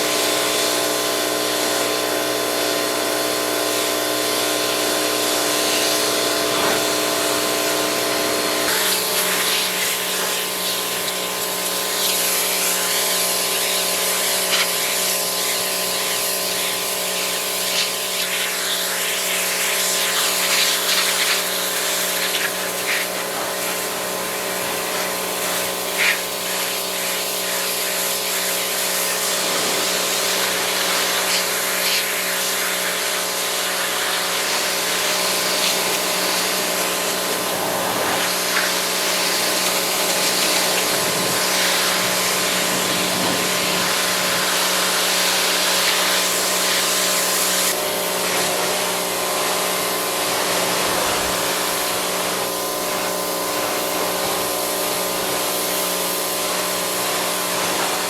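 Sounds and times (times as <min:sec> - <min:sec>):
pressure washer engine: 0:00.0 - 0:58.0
water spray hissing: 0:05.1 - 0:48.9.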